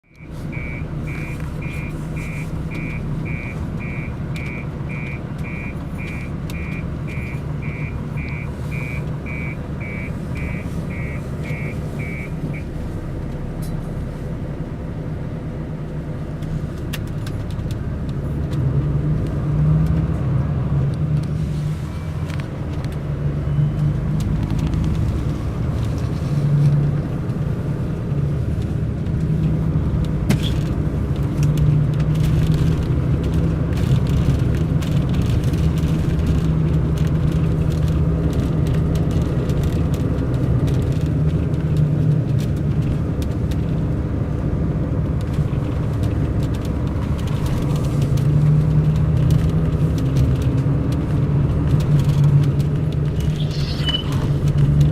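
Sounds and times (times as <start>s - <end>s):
diesel coach engine running: 0.0s - 54.9s
electronic warning beep: 0.1s - 12.7s, 53.4s - 54.4s.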